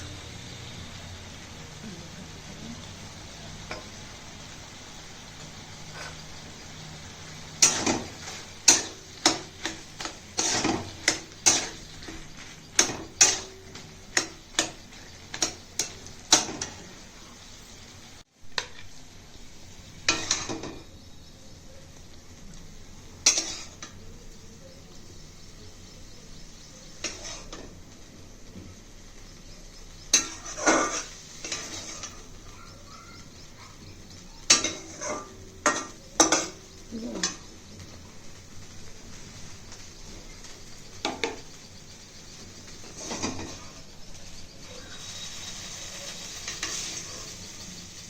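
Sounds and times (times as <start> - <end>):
faint sizzle: 0.0 - 48.0
spoon scraping a frying pan: 5.8 - 17.0, 20.0 - 20.9, 23.2 - 24.0, 26.8 - 27.8, 30.1 - 32.5, 33.2 - 37.5, 42.2 - 43.9, 44.7 - 48.0.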